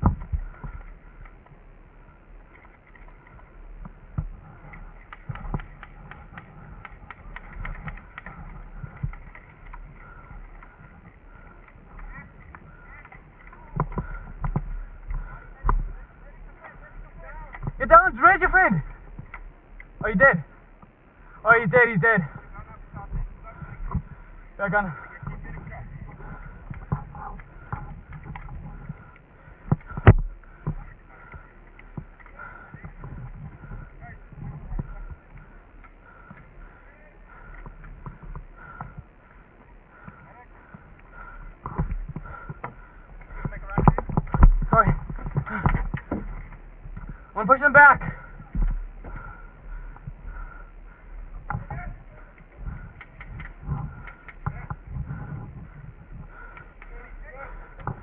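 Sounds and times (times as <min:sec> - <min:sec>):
gear knocking against camera: 0:41.6 - 0:50.2.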